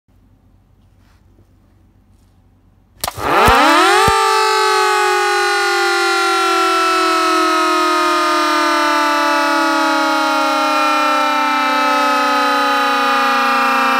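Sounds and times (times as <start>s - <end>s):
siren winding up and wailing: 3.0s - 13.9s.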